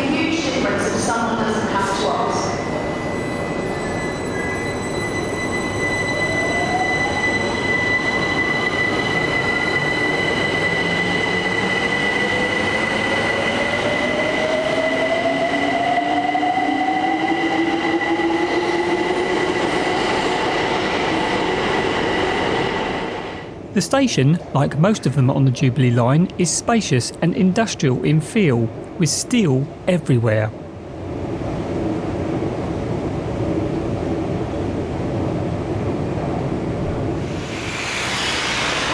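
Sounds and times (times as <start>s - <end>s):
rail rumble: 30.6s - 38.9s
steady high-pitched tone: 37.0s - 38.9s
electric train motors whining: 37.2s - 38.9s.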